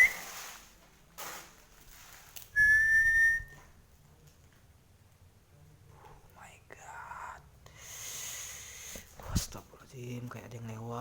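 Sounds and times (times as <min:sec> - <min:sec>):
high whistle: 0:00.0 - 0:00.3, 0:02.6 - 0:03.6
breathy hiss: 0:07.7 - 0:09.2.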